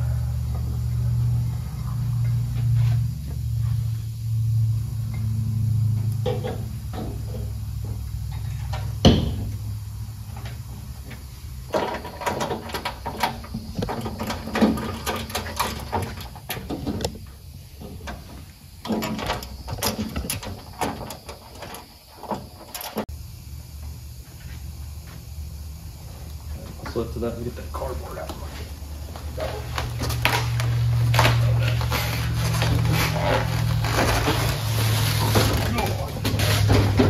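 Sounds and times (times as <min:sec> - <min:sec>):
metal clanking and scraping: 0:06.2 - 0:09.5, 0:11.6 - 0:23.1.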